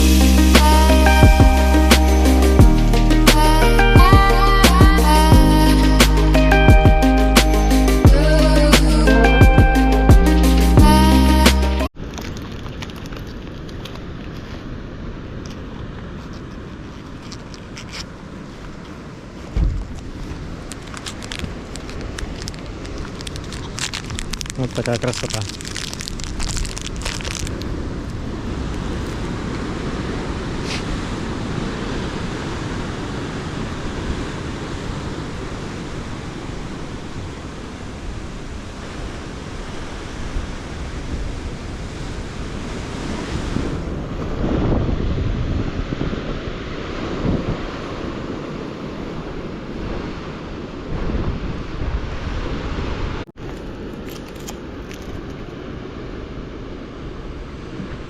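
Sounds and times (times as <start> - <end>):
ocean surf breaking: 0.0 - 12.2, 12.8 - 58.0
wind buffeting microphone: 15.6 - 53.2.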